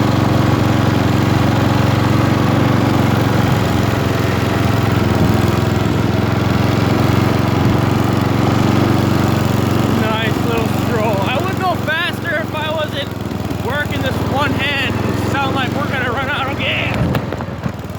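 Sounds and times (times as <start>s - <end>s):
lawnmower engine running: 0.0s - 17.9s.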